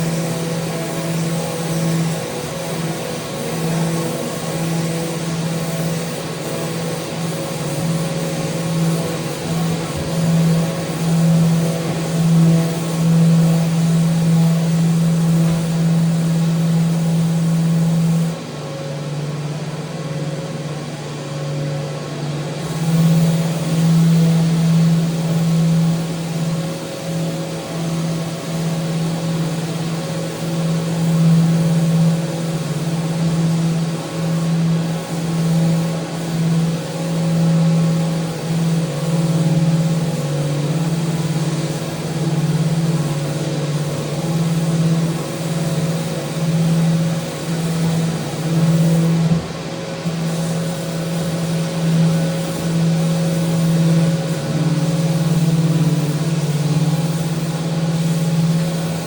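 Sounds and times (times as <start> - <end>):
electric power sander running: 0.0 - 18.3.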